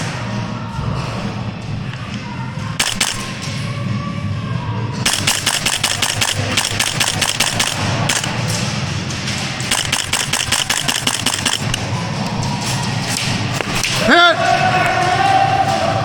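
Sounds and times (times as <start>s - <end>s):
airsoft rifles firing bursts: 2.8s - 3.4s, 5.0s - 11.9s.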